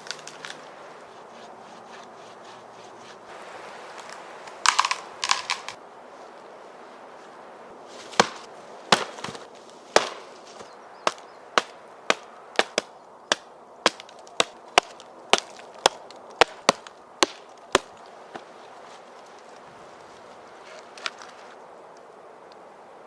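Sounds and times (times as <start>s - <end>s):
wood chopping strikes: 4.6s - 5.8s, 8.0s - 18.5s.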